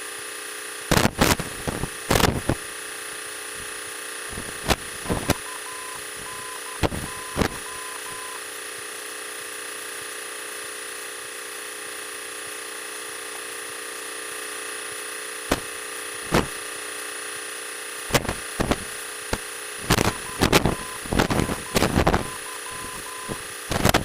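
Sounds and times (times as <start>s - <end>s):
sharp crackles and clicks: 18.1s - 24.0s
airplane engine drone: 19.8s - 24.0s.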